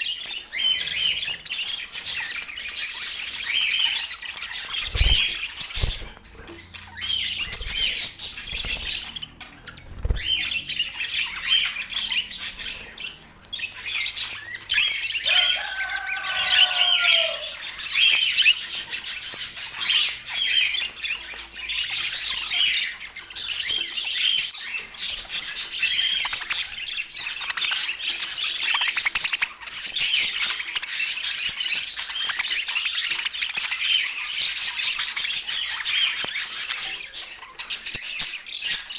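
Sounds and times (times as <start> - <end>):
budgerigars chattering: 0.0 - 38.9.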